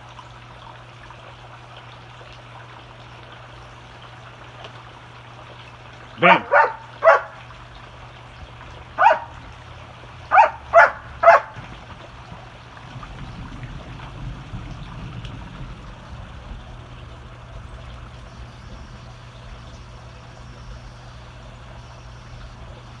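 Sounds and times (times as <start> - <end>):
dog barking: 6.2 - 7.5, 8.9 - 9.4, 10.2 - 11.8
low rumble: 8.5 - 22.8.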